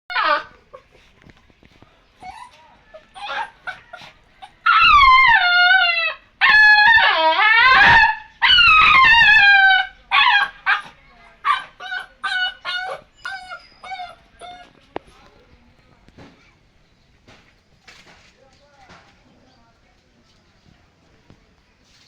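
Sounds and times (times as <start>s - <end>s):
puppy howling: 0.1s - 0.6s, 2.2s - 14.8s
puppy yipping: 0.1s - 0.8s, 2.2s - 14.8s.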